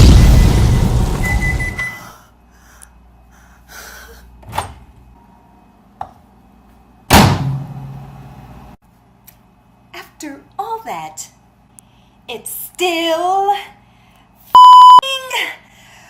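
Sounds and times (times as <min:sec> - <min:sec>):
explosion sound effect: 0:00.0 - 0:01.8
loud thud: 0:00.0 - 0:01.8, 0:07.1 - 0:07.9
low hum: 0:00.0 - 0:01.9.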